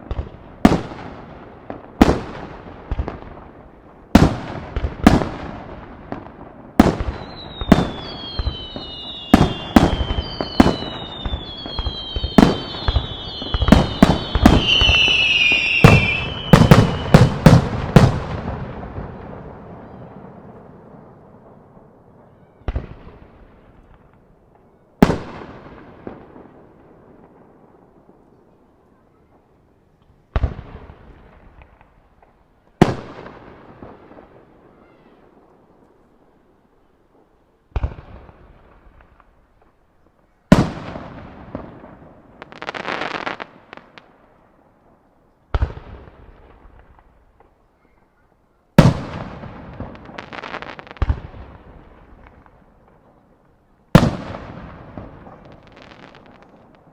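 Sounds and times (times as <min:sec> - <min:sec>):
firework crackling: 0:00.0 - 0:24.2, 0:40.5 - 0:44.4, 0:48.8 - 0:53.0.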